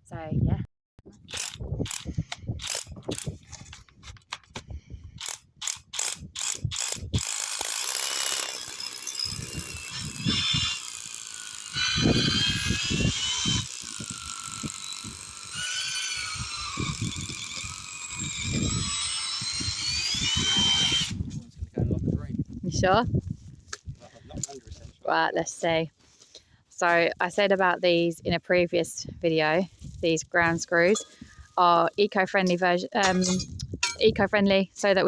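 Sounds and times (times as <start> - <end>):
mechanical ratchet clicking: 1.3 - 3.3, 5.2 - 21.2.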